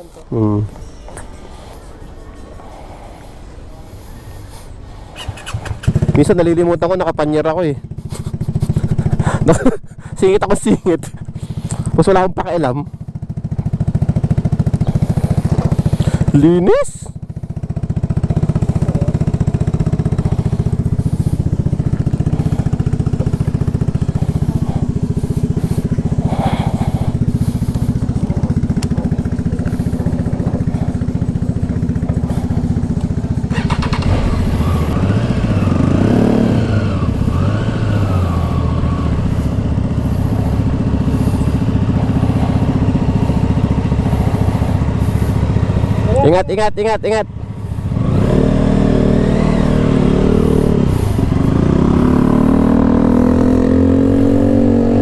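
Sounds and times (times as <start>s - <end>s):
motorcycle engine running: 0.0s - 55.0s.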